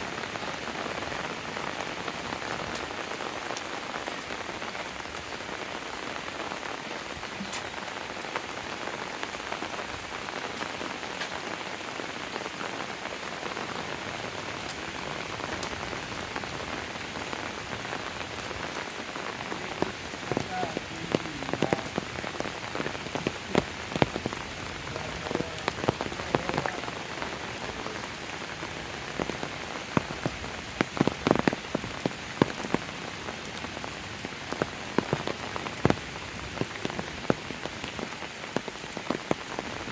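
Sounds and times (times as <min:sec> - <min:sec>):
steady rain falling: 0:00.0 - 0:39.9.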